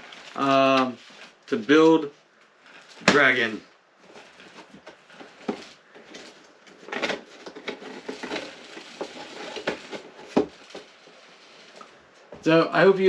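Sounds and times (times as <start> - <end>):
booklet pages rustling: 2.5 - 12.0.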